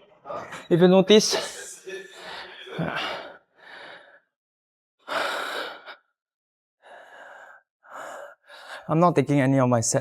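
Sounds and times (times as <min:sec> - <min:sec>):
man breathing heavily: 0:01.4 - 0:04.3, 0:05.1 - 0:06.0, 0:06.8 - 0:08.9.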